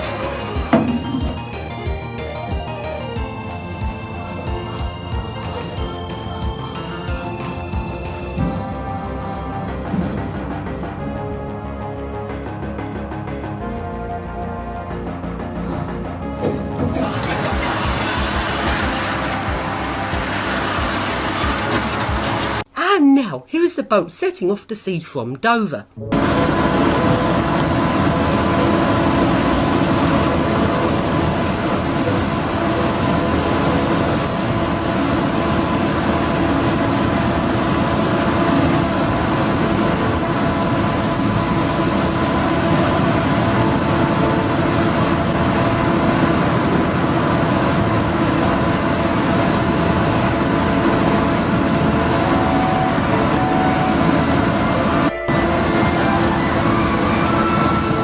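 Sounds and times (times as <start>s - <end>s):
ship engines rumbling: 0.0s - 22.7s, 26.0s - 58.0s
steady hum tones: 26.0s - 58.0s.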